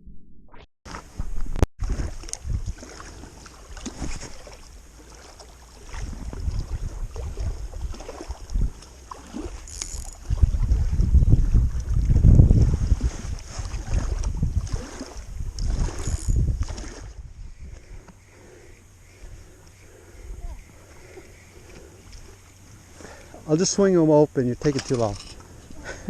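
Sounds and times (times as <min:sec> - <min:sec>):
wind buffeting microphone: 0:01.0 - 0:04.4, 0:05.9 - 0:18.2.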